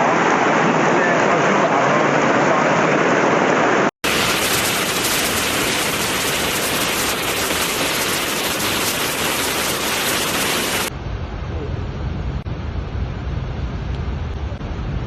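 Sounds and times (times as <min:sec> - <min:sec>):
heavy rain downpour: 0:00.0 - 0:10.9
running floodwater: 0:00.0 - 0:10.9.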